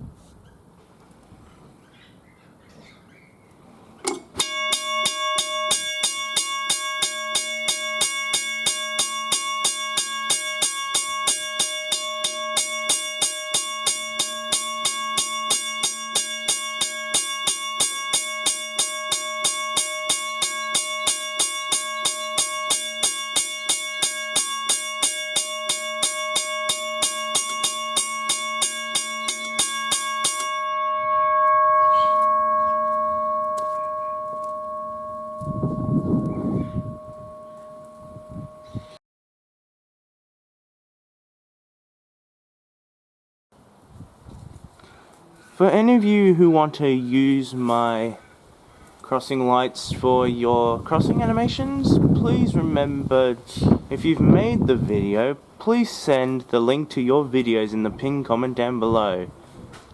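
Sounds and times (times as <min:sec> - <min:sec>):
railway crossing bell striking: 0:04.3 - 0:39.0
gong ringing tone: 0:04.4 - 0:39.0.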